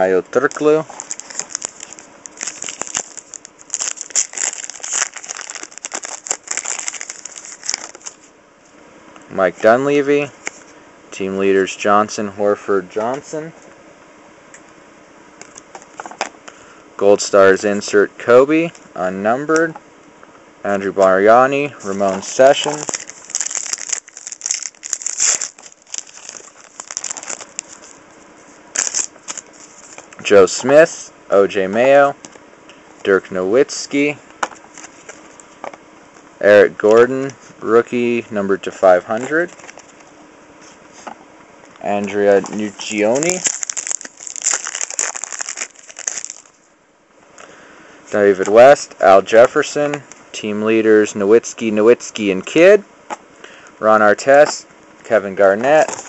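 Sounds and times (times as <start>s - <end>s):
card pack wrapper crinkling: 0.4s - 8.3s, 21.8s - 28.0s, 28.7s - 30.2s, 39.2s - 40.1s, 42.0s - 46.6s.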